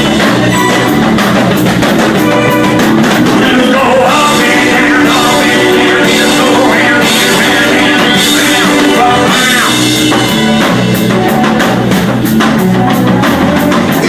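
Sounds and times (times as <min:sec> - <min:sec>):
band playing a rock song: 0:00.0 - 0:14.0.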